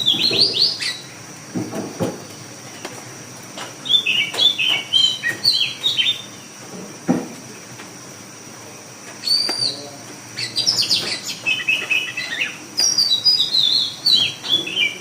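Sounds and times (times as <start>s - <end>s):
bird chirping: 0.0s - 1.2s, 3.8s - 6.5s, 9.2s - 9.8s, 10.4s - 15.0s.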